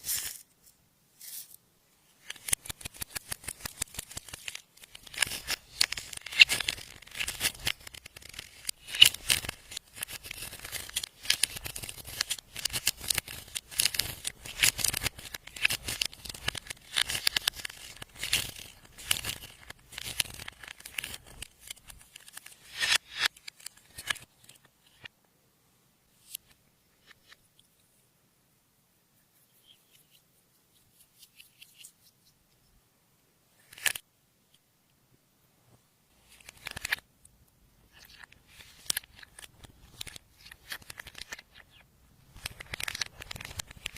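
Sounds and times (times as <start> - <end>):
slime squishing and crackling: 2.4 - 21.8.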